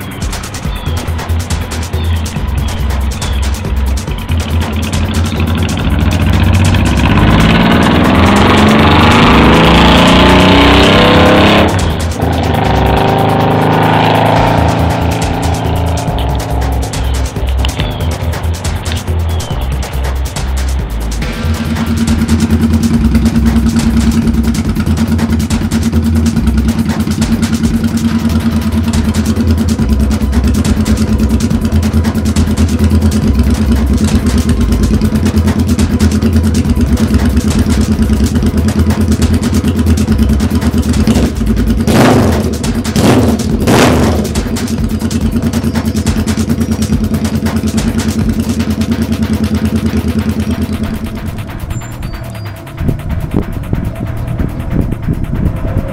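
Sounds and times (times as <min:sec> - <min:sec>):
engine revving: 0:00.0 - 0:55.9
motorcycle engine idling: 0:00.0 - 0:55.9.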